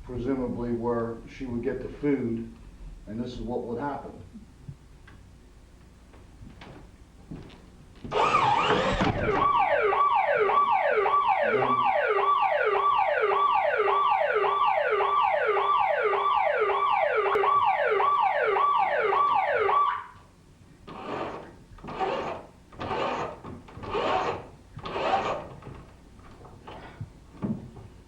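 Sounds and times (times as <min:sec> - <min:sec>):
electronic alarm siren wailing: 0:08.1 - 0:20.2.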